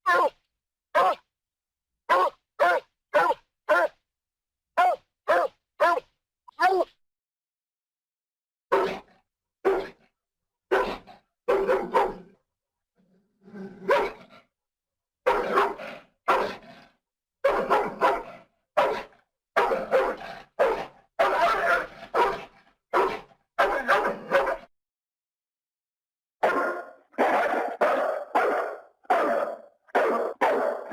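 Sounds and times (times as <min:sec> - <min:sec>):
dog barking: 0:01.0 - 0:01.2, 0:02.1 - 0:04.0, 0:04.8 - 0:06.1, 0:08.7 - 0:10.0, 0:10.7 - 0:12.4, 0:13.8 - 0:14.3, 0:15.2 - 0:16.6, 0:17.4 - 0:24.7, 0:26.4 - 0:30.9.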